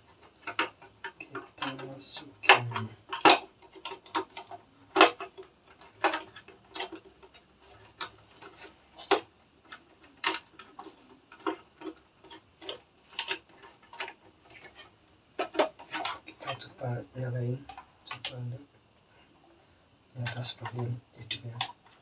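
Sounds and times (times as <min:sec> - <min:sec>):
hard plastic clicks and knocks: 0:00.1 - 0:16.6.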